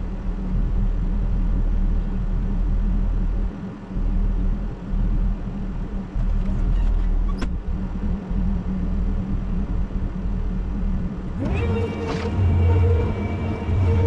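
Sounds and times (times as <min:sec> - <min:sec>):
engine humming: 0:11.2 - 0:14.0.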